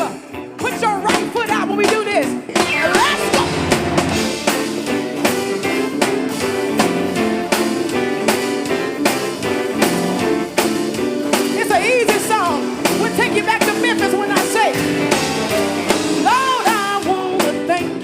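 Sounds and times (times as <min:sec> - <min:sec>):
drums keeping a steady beat: 0:00.0 - 0:18.0
live band playing gospel music: 0:00.0 - 0:18.0
person singing melodic run: 0:11.0 - 0:18.0.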